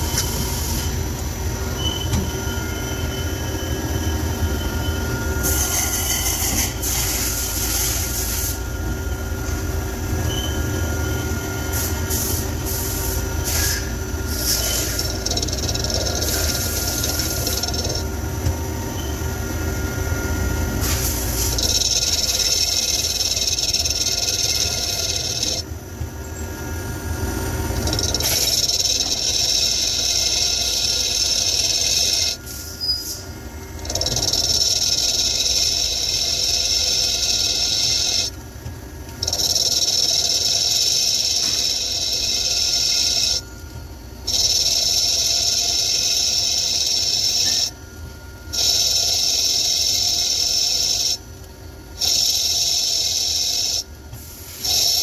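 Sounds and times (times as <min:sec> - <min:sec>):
machine hum: 0:00.0 - 0:55.0
lathe tool cutting hiss: 0:05.4 - 0:08.7, 0:11.7 - 0:18.0, 0:20.7 - 0:25.6, 0:27.7 - 0:38.3, 0:39.2 - 0:43.4, 0:44.2 - 0:47.8, 0:52.0 - 0:55.0.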